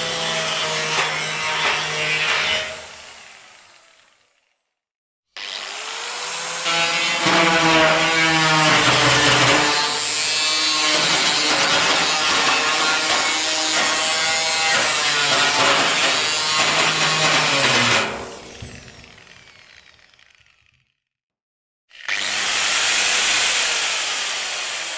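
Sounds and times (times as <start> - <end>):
angle grinder grinding metal: 0.0 - 3.1, 5.4 - 20.1.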